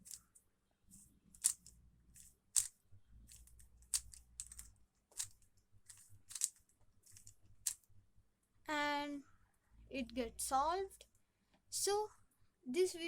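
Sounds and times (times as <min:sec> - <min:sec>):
plastic cube clicks: 0:01.3 - 0:01.8, 0:02.5 - 0:07.9.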